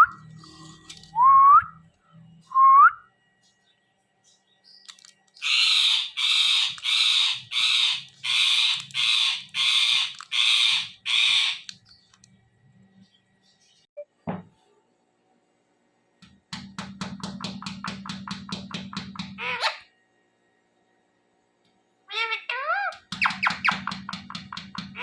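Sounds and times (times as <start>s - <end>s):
parrot screeching: 5.4s - 11.7s, 19.4s - 19.9s, 22.1s - 24.0s.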